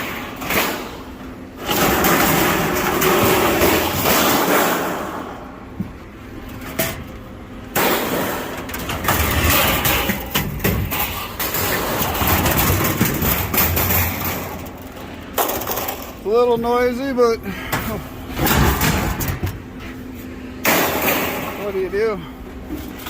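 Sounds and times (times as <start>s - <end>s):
scrap metal clattering: 7.8s - 16.4s.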